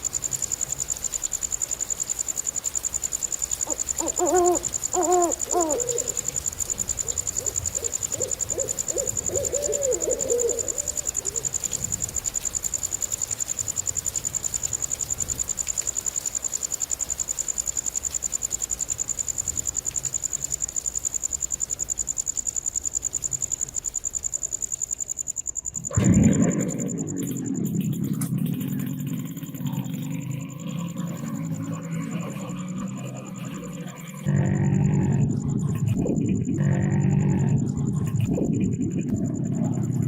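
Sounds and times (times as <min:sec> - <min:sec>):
high insect-like chirping: 0:00.0 - 0:40.0
loud low rumbling: 0:26.0 - 0:31.8.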